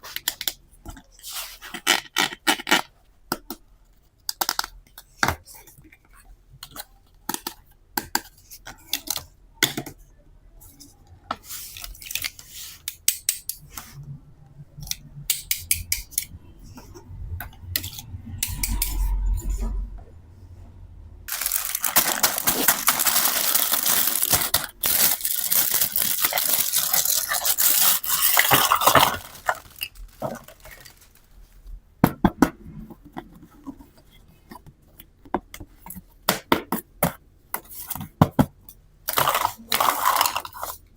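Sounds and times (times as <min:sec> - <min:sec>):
plastic toy pieces clattering: 0:21.3 - 0:31.4, 0:39.1 - 0:40.9.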